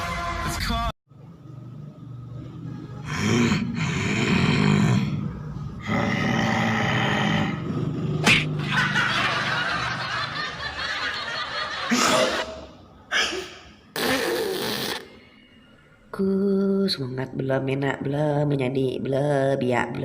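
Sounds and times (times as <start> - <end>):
person coughing comically: 11.9 - 14.3.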